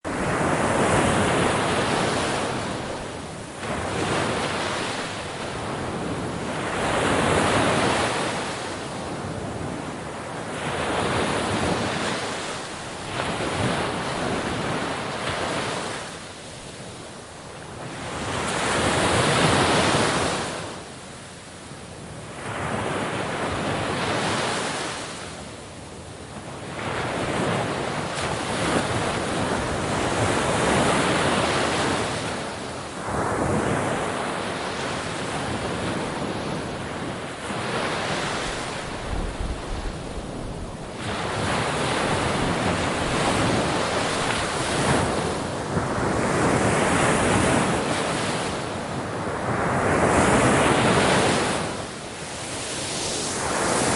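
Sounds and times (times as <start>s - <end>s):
ocean waves breaking: 0.1s - 9.6s, 26.8s - 53.9s.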